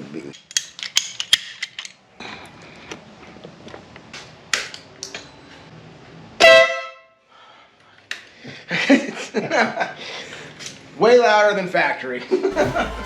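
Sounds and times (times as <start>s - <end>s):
dual-tone motorcycle horn blast: 6.4s - 7.1s.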